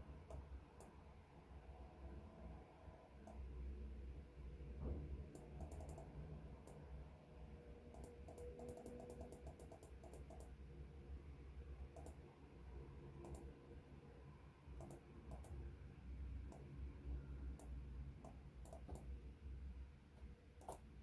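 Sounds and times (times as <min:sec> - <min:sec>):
low steady hum: 0:00.0 - 0:21.0
faint small clicks: 0:03.2 - 0:03.4, 0:05.3 - 0:06.8, 0:07.9 - 0:10.6, 0:12.0 - 0:12.2, 0:13.2 - 0:13.5, 0:14.8 - 0:15.6, 0:17.6 - 0:19.1.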